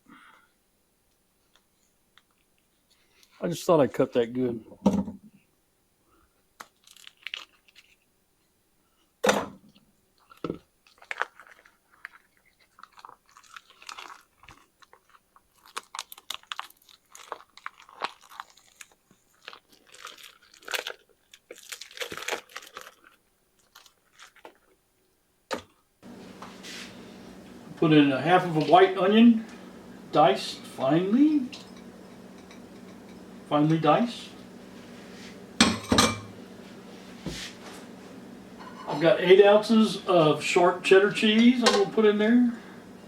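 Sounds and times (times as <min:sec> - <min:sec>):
wet squishing of meat and wrapper: 0:06.6 - 0:08.1, 0:10.2 - 0:24.8.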